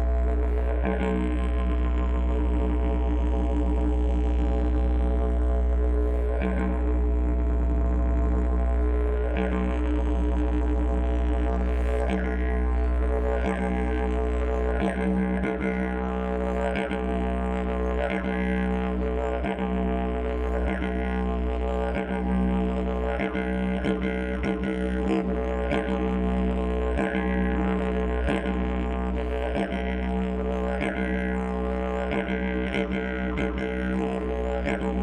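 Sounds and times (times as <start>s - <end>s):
didgeridoo drone: 0.0s - 35.0s.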